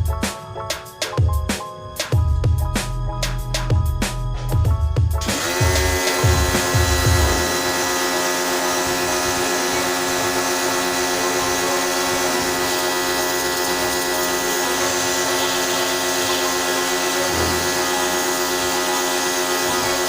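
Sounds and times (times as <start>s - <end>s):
machine motor humming with hiss: 5.2s - 20.0s.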